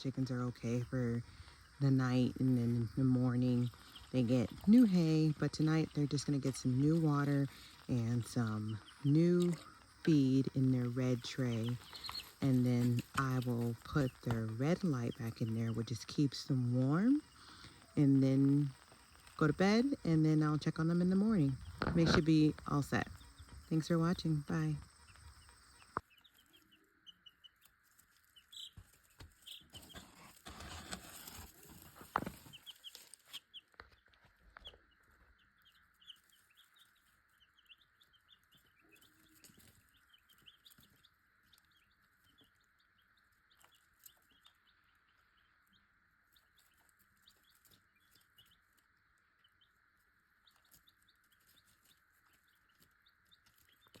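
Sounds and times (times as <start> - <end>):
baby chicks peeping: 0.0 - 54.0
rustling: 3.5 - 16.0, 27.5 - 42.4.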